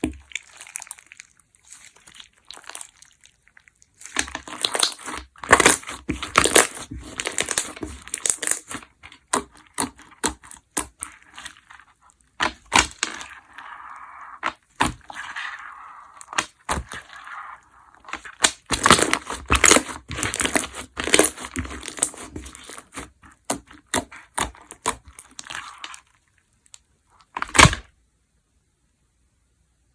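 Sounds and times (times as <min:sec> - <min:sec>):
slime crackling when squeezed: 0:00.0 - 0:11.8.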